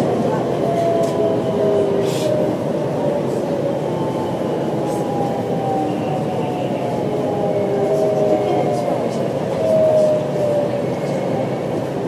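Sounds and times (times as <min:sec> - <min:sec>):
train rumble: 0:00.0 - 0:12.0.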